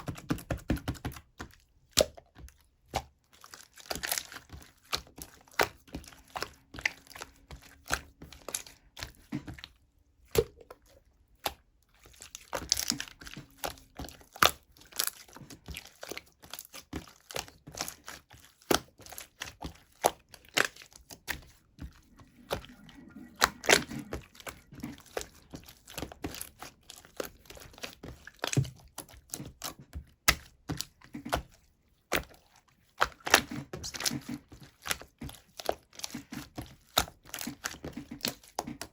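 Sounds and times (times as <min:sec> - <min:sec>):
slime popping and crackling: 0:12.1 - 0:31.5.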